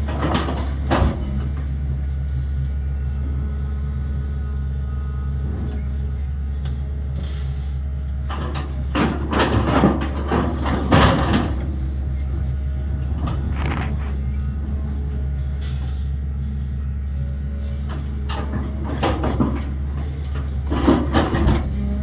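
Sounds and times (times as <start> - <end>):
scraping and clattering: 0.0 - 1.8, 8.2 - 14.8, 17.7 - 22.0
excavator diesel engine running: 0.0 - 22.0.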